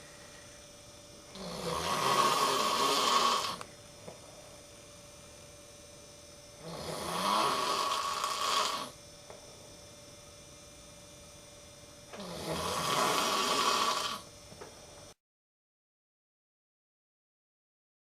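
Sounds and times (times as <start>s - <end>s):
faint steady hum: 0.0s - 15.2s
person snoring: 1.3s - 3.6s, 6.6s - 9.0s, 12.2s - 14.3s.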